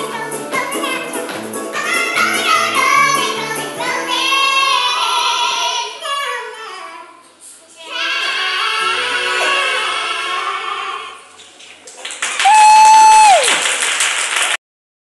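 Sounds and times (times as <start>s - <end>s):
high voices singing: 0.0s - 6.2s, 7.8s - 11.4s.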